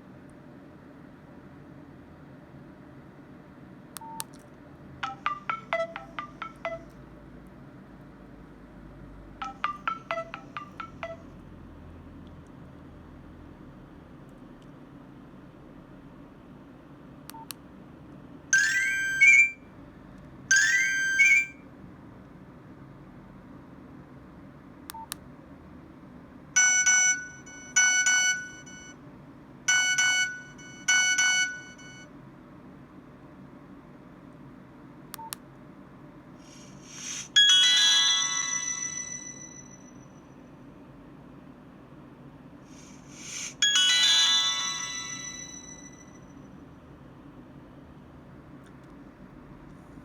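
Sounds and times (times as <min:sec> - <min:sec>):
mobile phone ringtone melody: 0:05.0 - 0:06.9, 0:09.4 - 0:11.3, 0:18.6 - 0:19.6, 0:20.5 - 0:21.6, 0:26.6 - 0:28.9, 0:29.7 - 0:32.0, 0:37.0 - 0:39.9, 0:43.1 - 0:46.2.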